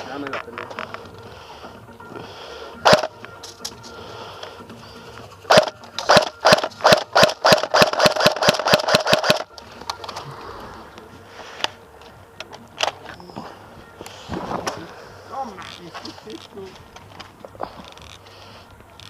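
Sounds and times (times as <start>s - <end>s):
airsoft gun shots: 2.8s - 3.1s, 5.5s - 9.5s.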